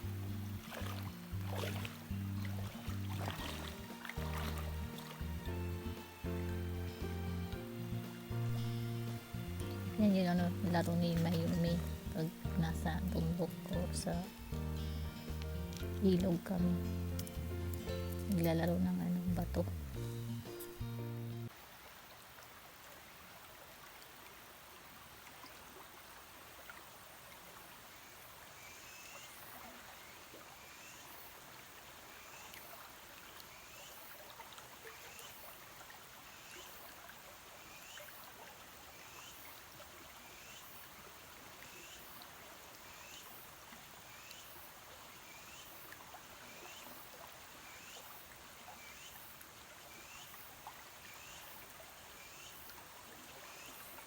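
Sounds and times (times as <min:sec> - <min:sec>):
river water rushing: 0:00.0 - 0:20.6.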